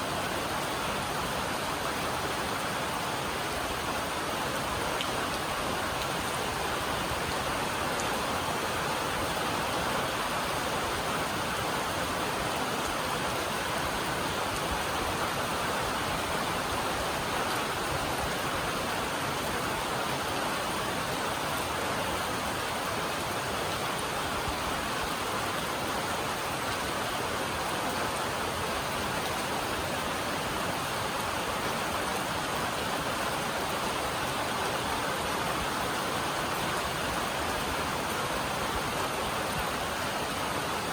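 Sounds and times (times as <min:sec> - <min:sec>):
rain on a metal roof: 0:00.0 - 0:40.9.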